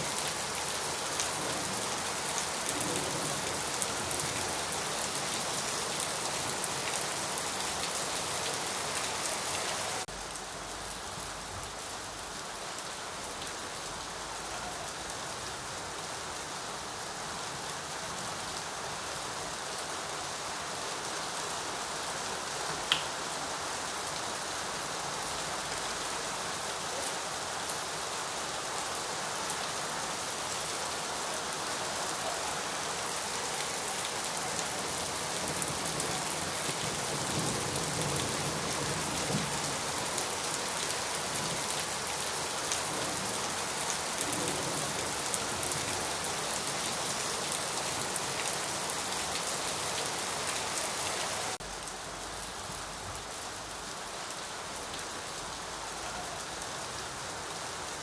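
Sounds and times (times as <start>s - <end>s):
steady rain patter: 0.0s - 58.0s.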